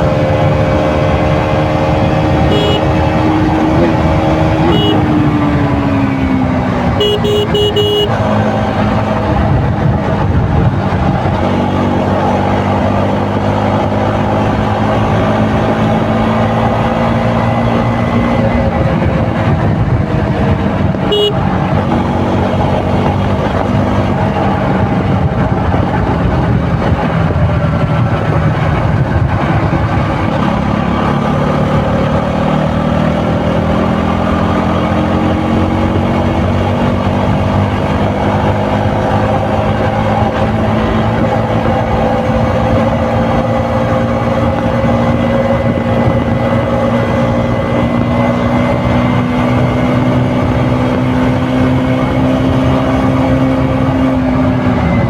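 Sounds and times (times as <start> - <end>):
motorcycle engine running: 0.0 - 55.0.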